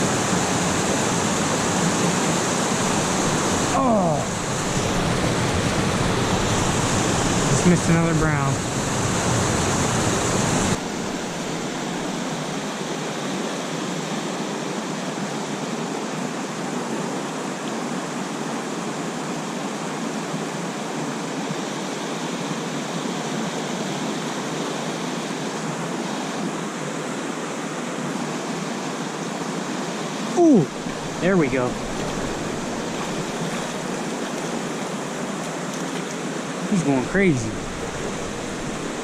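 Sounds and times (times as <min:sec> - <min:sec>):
deeper water rush: 0:00.0 - 0:13.6, 0:24.4 - 0:39.0
mountain stream flowing: 0:00.0 - 0:39.0.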